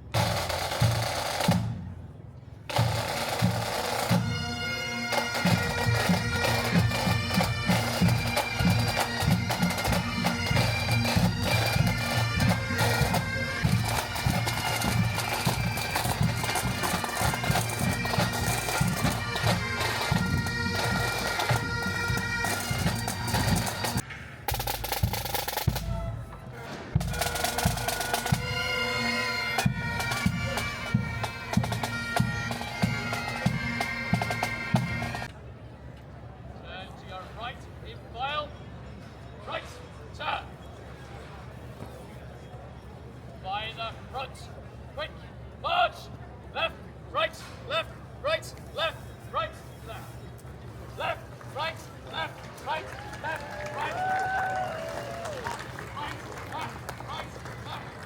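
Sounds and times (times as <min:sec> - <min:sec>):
bagpipes playing: 0:02.8 - 0:24.0, 0:27.0 - 0:35.3
snare and bass drum beats: 0:05.9 - 0:26.2, 0:26.9 - 0:28.5.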